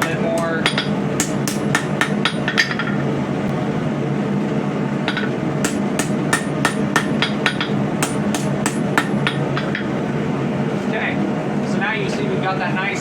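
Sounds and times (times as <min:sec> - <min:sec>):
hammer ringing on anvil: 0:00.0 - 0:03.0, 0:05.1 - 0:09.9
constant hum: 0:00.0 - 0:13.0.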